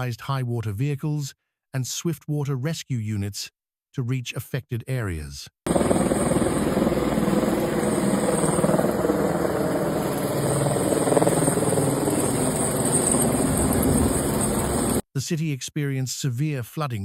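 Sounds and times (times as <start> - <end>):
helicopter rotor and engine: 5.7 - 15.0.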